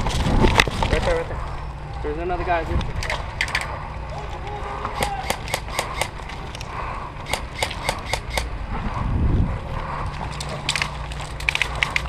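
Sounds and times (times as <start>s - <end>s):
low rumble: 0.0s - 12.0s
airsoft guns firing: 4.9s - 6.2s.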